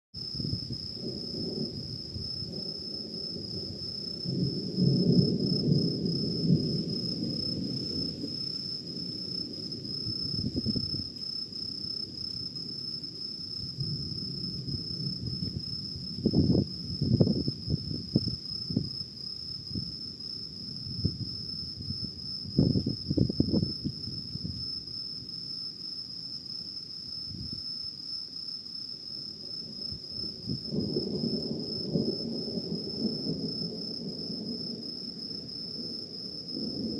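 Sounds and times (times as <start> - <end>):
thunder rumbling: 0.2 - 11.2, 13.5 - 24.7, 29.5 - 36.9
insects chirring: 0.2 - 36.9.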